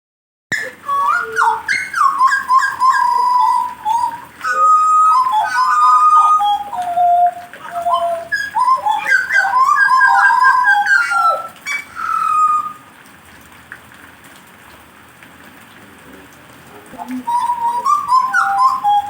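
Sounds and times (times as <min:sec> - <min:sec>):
songbird whistling song: 0:00.5 - 0:12.9, 0:17.0 - 0:19.0
faint steady background hiss: 0:00.5 - 0:19.0.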